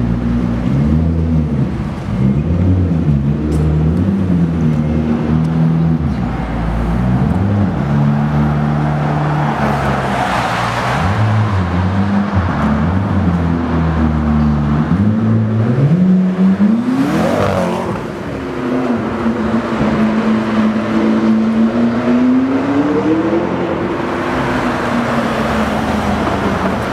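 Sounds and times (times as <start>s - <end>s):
sports car engine revving: 11.0s - 26.9s.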